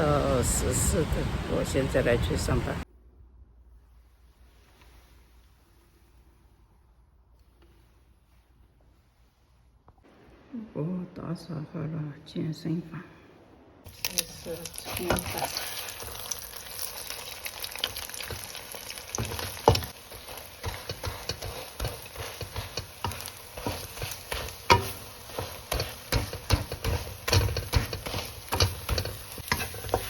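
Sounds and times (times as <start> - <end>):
egg sizzling in a pan: 13.9 - 30.0
spatula scraping a pan: 14.8 - 17.0, 17.8 - 30.0.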